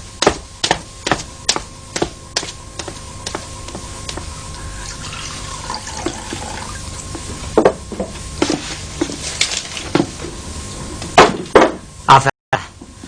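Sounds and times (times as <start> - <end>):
water running: 4.8 - 7.2.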